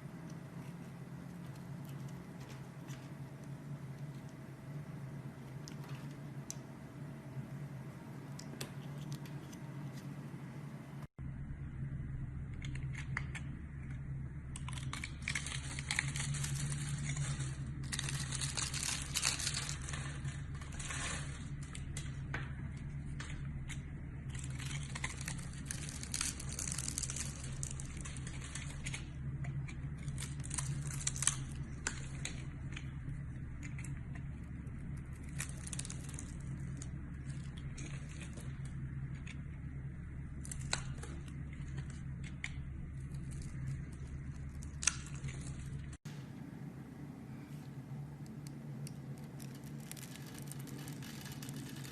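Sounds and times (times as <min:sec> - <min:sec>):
steady low hum: 0:00.0 - 0:51.9
dry material crunching by hand: 0:14.5 - 0:22.3, 0:23.1 - 0:34.1, 0:35.0 - 0:39.4, 0:49.1 - 0:51.9.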